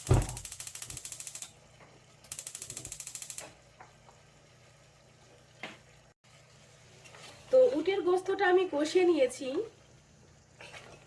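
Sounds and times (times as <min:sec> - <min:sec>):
stove igniter clicking rapidly: 0:00.0 - 0:01.5, 0:02.3 - 0:03.6.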